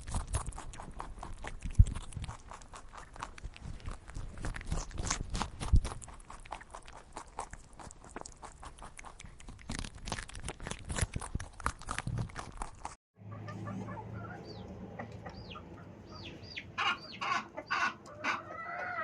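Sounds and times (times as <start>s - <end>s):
farm animal crunching and knocking: 0.0s - 14.1s.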